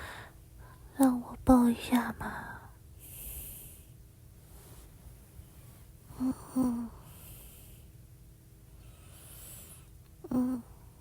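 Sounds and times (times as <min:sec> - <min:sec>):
woman breathing: 0:00.0 - 0:00.9
soft murmured sounds: 0:00.0 - 0:11.0.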